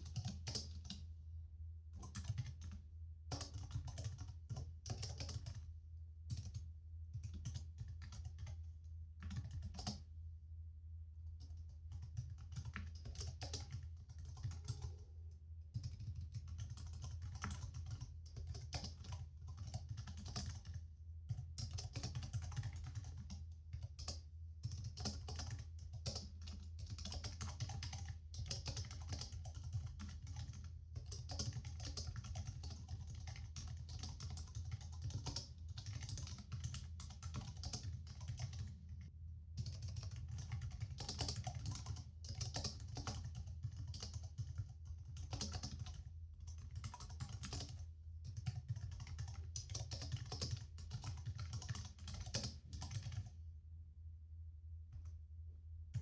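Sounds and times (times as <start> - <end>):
computer keyboard key clicks: 39.6 - 53.2.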